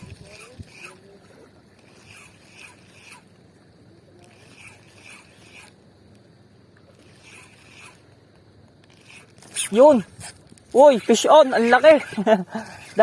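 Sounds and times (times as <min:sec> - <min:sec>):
fishing reel cranking: 0:00.0 - 0:03.3, 0:04.2 - 0:05.8, 0:06.9 - 0:08.2, 0:08.8 - 0:13.0.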